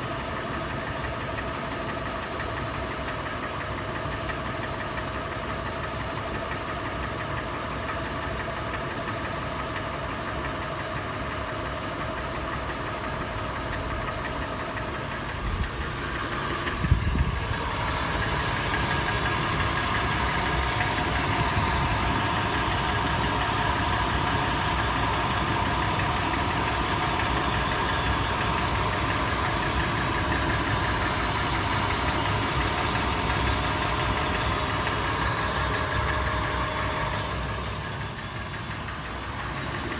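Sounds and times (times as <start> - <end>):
engine idling: 0.0 - 39.9
metallic engine tapping: 13.7 - 39.9.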